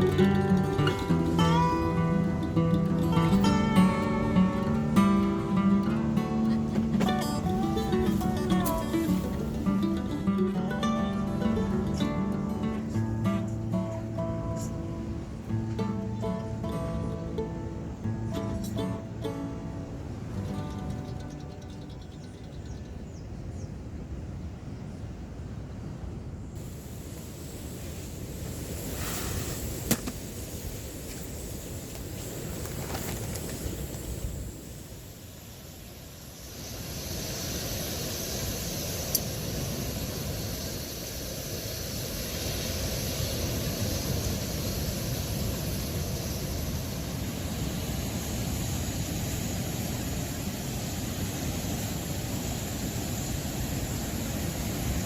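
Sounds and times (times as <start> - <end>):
sea waves washing on beach: 0.0 - 21.9, 25.3 - 55.0.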